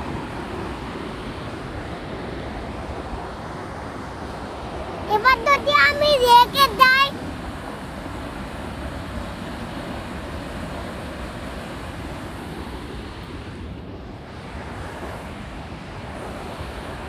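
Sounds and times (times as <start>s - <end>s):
wind buffeting microphone: 0.0s - 17.0s
waterfall roaring: 4.2s - 12.5s.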